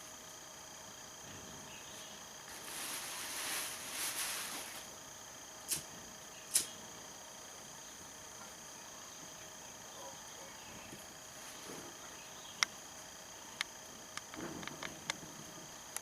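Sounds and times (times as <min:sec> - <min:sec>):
insect chirring: 0:00.0 - 0:16.0
rustling or scraping: 0:02.5 - 0:04.9
sharp clicks: 0:06.5 - 0:06.8.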